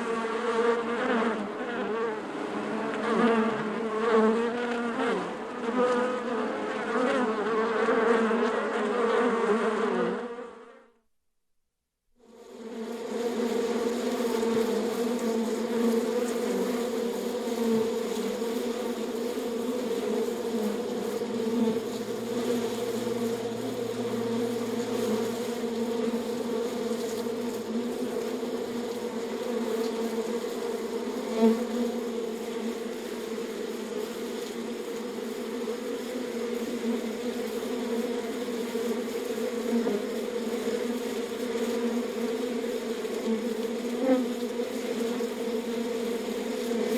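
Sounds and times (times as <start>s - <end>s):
bees buzzing: 12.3s - 46.9s.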